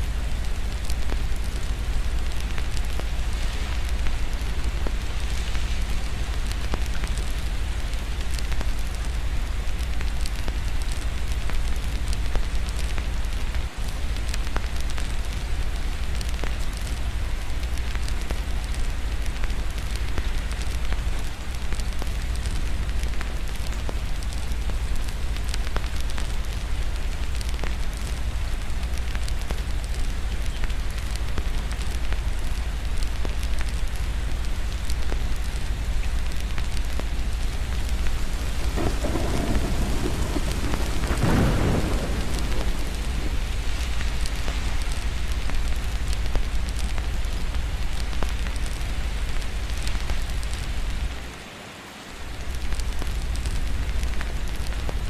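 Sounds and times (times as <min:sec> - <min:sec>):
steady rain: 0:00.0 - 0:55.0
distant thunder rumbling: 0:37.6 - 0:46.5.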